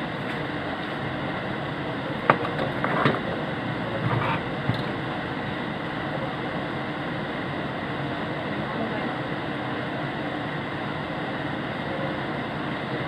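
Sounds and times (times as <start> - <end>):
steady whooshing fan noise: 0.0 - 13.0.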